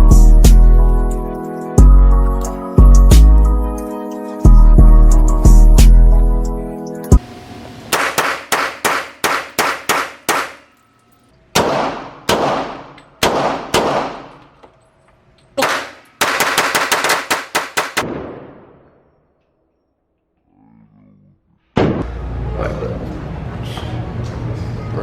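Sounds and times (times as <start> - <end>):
gunshots with ringing echo: 7.9 - 10.7, 11.5 - 14.5, 15.6 - 19.3.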